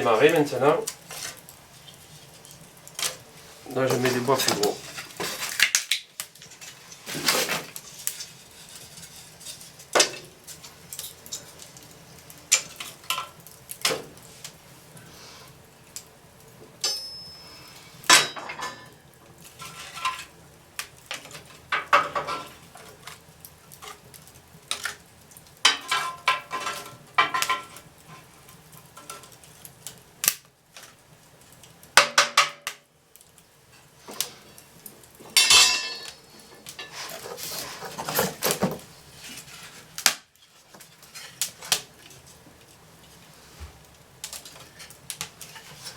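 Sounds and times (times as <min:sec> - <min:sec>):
ringing clink: 0:16.8 - 0:17.6.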